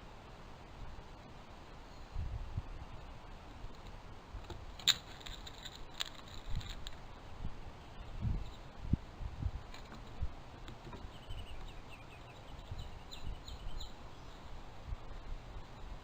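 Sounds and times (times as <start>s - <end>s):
bird chirping: 7.8s - 8.7s, 10.9s - 14.5s.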